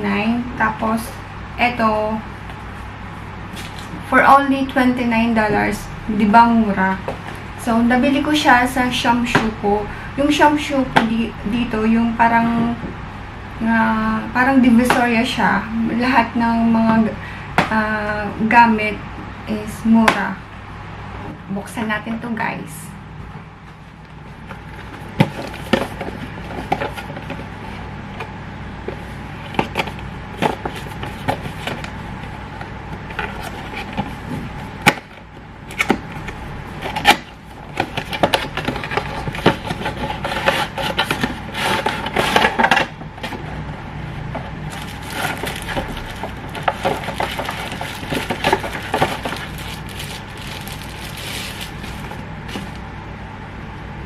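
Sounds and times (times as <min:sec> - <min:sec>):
low background hum: 0:00.0 - 0:54.0
plastic packaging crinkling: 0:44.7 - 0:52.9.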